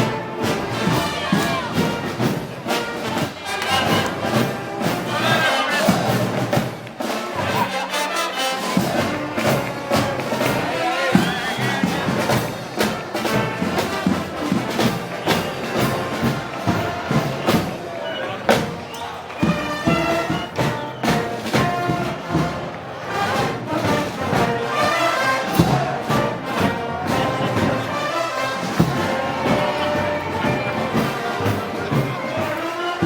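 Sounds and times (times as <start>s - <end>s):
drum strokes: 0.0s - 7.8s, 8.4s - 33.0s
brass band playing: 0.0s - 33.0s.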